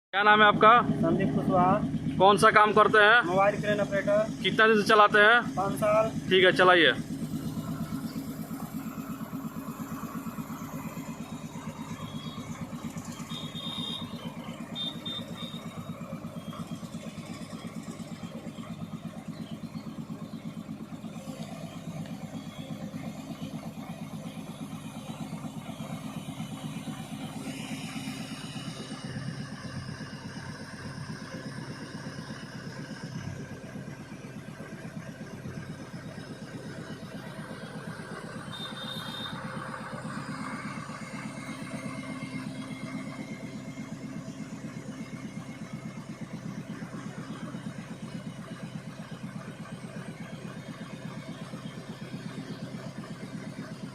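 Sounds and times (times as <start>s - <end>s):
crane engine running: 0.2s - 53.9s
short high-pitched tones: 13.2s - 15.9s.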